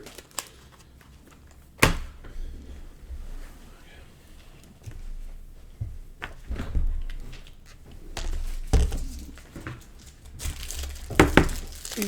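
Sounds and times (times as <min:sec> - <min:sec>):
packaging crinkling and tearing: 0:00.0 - 0:01.6, 0:08.9 - 0:12.0.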